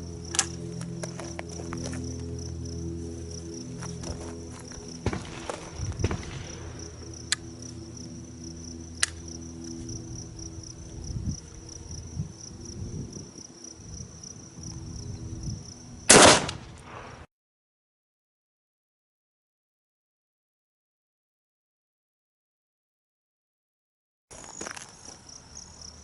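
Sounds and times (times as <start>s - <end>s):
high insect buzz: 0.0s - 16.4s, 24.3s - 26.0s
sharp gun clicks: 0.3s - 0.6s, 9.0s - 9.3s, 16.1s - 17.0s
loud shotgun shot: 5.0s - 6.9s, 16.1s - 17.3s.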